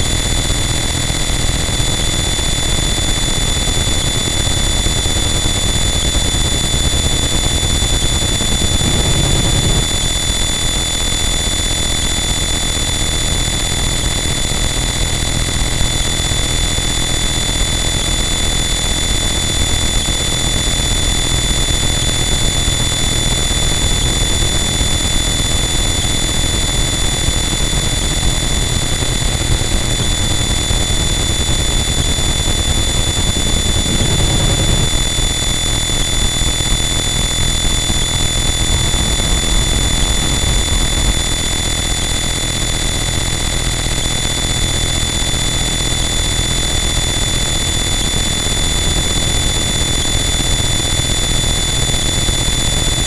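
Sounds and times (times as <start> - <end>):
dense distorted static: 8.1 - 10.2, 29.2 - 43.6.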